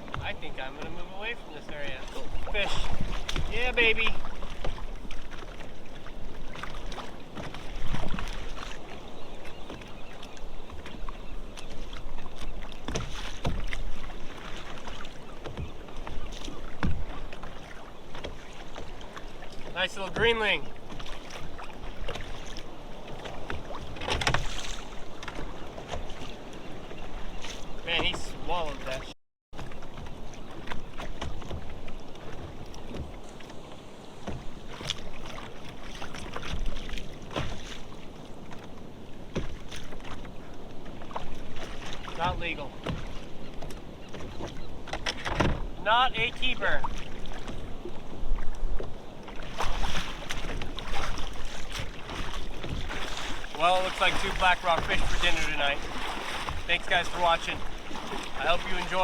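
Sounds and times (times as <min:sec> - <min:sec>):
water noise: 0:00.0 - 0:59.0
wind: 0:00.0 - 0:59.0
knocks and clicks of fishing gear: 0:23.4 - 0:24.6, 0:42.8 - 0:45.7.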